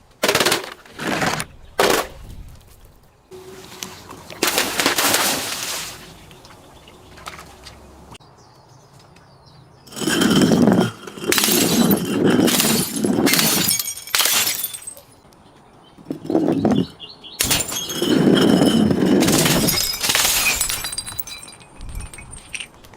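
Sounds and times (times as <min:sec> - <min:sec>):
glass shards tinkling: 0:09.9 - 0:15.2, 0:16.1 - 0:22.9
glass being smashed and crushed: 0:11.2 - 0:15.2, 0:17.4 - 0:22.8.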